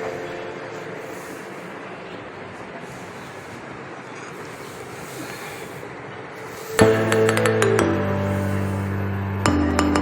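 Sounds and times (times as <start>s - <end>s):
sustained chords: 6.8s - 10.0s.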